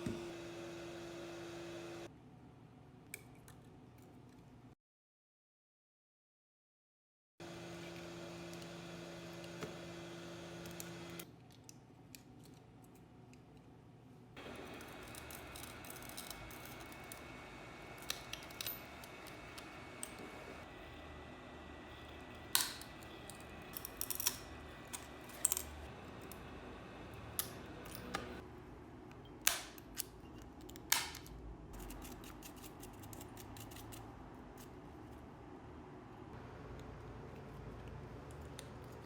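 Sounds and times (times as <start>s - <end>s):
small tools clicking and tapping: 14.6s - 17.3s, 18.0s - 20.3s, 22.4s - 26.4s, 27.4s - 28.4s.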